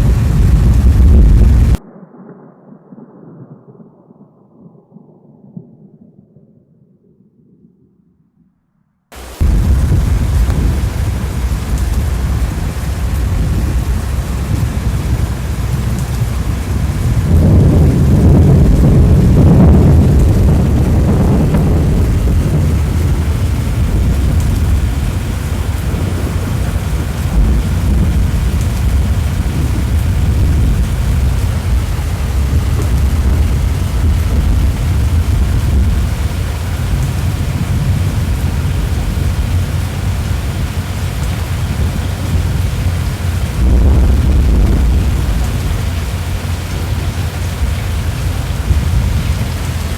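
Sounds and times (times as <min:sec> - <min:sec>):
heavy rain falling: 0:00.0 - 0:01.8, 0:09.1 - 0:49.9
thunder rumbling: 0:00.0 - 0:08.1, 0:09.1 - 0:49.9.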